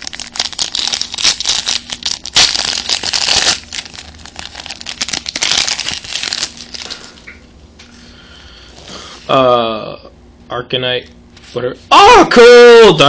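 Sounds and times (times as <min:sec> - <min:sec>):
foil wrapper crinkling: 0:00.0 - 0:07.3.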